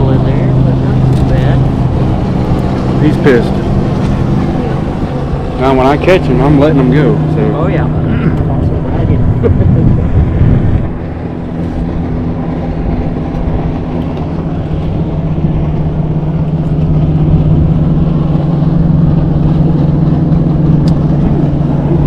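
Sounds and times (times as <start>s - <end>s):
boat engine humming: 0.0s - 22.0s
low rumble: 0.0s - 22.0s.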